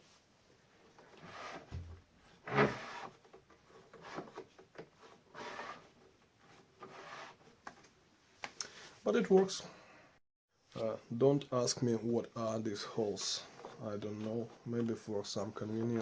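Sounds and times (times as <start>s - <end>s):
saw fence scraping: 2.4s - 3.2s.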